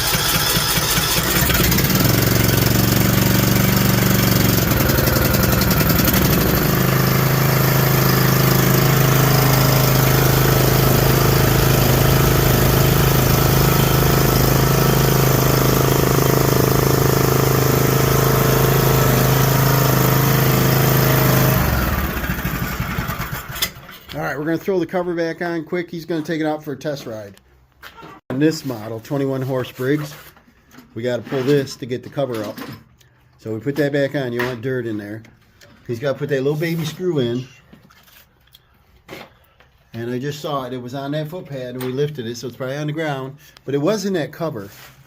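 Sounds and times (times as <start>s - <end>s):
lawn tractor engine running: 0.0s - 24.2s.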